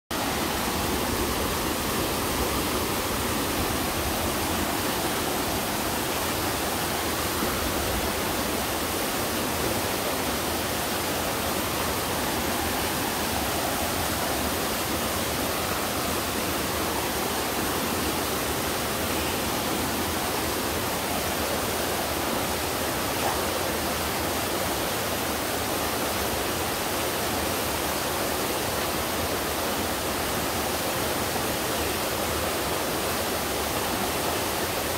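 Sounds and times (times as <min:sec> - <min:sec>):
waterfall rushing: 0:00.1 - 0:34.9.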